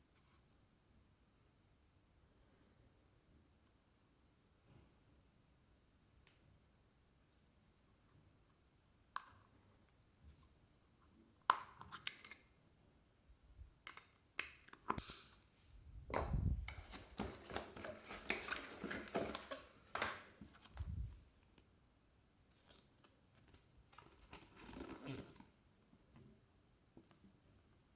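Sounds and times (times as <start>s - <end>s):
packaging crinkling and rustling: 16.7s - 20.9s.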